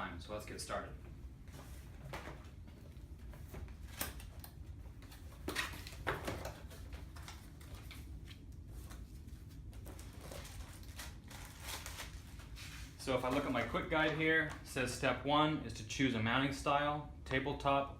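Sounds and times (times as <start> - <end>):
low steady hum: 0.0 - 17.9.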